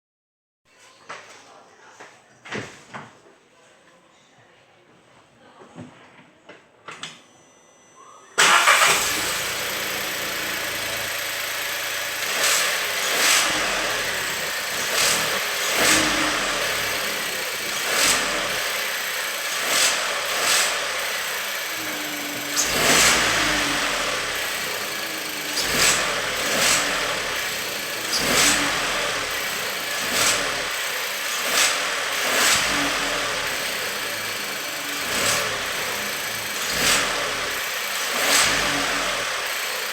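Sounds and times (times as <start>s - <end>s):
car engine starting and running: 8.4s - 39.9s
short loud engine noises: 8.4s - 39.9s.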